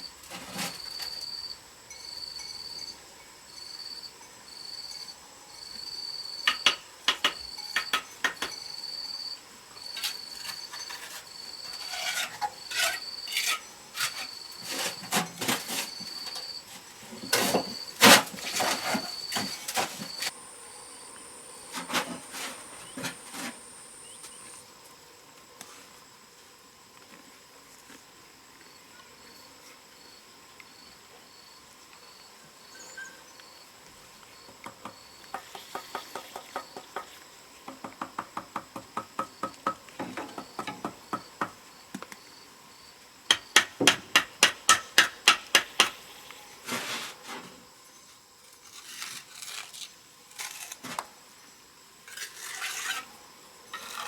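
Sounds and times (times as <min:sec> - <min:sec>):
insect chirping: 0:00.0 - 0:25.3, 0:30.0 - 0:46.6
hand work scrapes and knocks: 0:00.2 - 0:01.4, 0:06.5 - 0:08.7, 0:09.8 - 0:20.4, 0:21.7 - 0:24.6, 0:34.6 - 0:41.6, 0:43.3 - 0:47.6, 0:48.4 - 0:51.1, 0:52.1 - 0:54.0.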